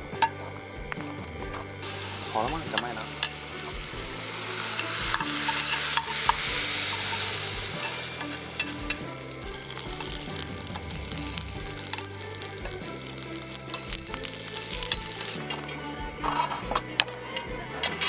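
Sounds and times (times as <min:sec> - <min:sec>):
food sizzling in a pan: 0:01.8 - 0:15.6.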